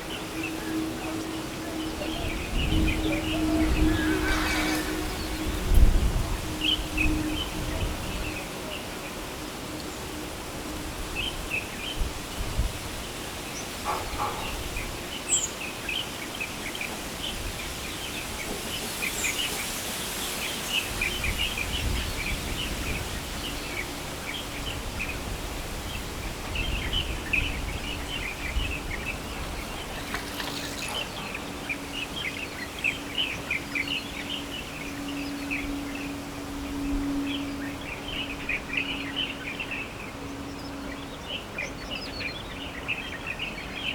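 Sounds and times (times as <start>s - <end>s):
birds chirping: 26.6s - 43.6s.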